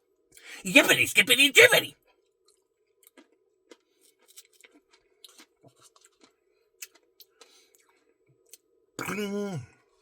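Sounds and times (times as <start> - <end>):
mouth clicks and wet smacks eating: 4.2 - 7.9.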